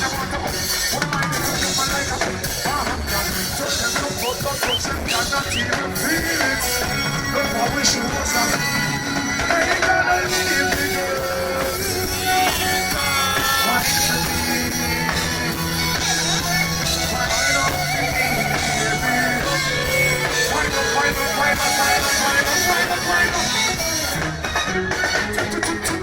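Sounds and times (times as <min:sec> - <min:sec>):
bass line: 0:00.0 - 0:26.0
live band playing dancehall: 0:00.0 - 0:26.0.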